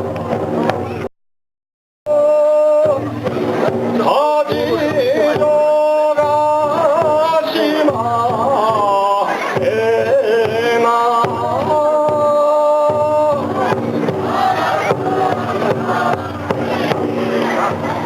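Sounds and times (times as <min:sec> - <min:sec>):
steady low beat: 0:13.0 - 0:18.0.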